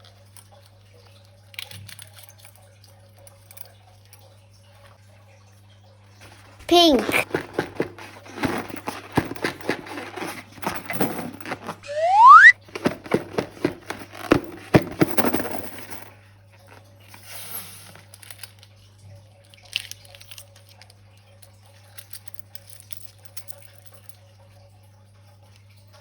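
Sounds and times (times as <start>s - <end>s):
rubbery squeaks and clicks: 11.8s - 12.6s.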